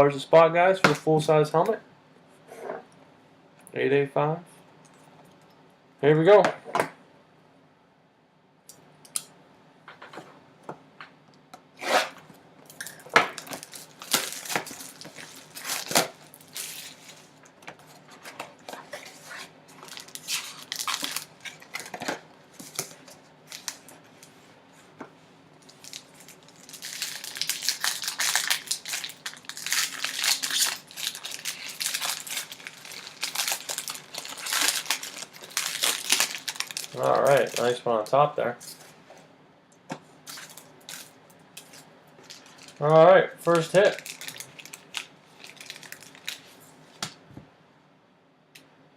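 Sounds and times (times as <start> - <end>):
plastic wrap crinkling: 12.7 - 24.4, 25.6 - 37.9, 40.2 - 46.7.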